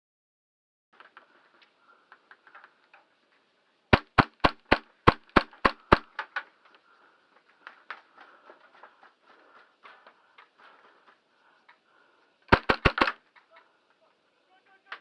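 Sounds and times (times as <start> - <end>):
faint cracks: 1.0 - 14.2
airsoft gun shots: 3.9 - 6.1, 12.5 - 13.2.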